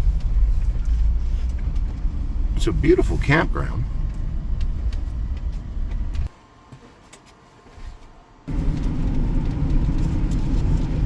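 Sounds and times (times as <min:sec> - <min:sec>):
van driving slowly: 0:00.0 - 0:06.3, 0:08.5 - 0:11.0.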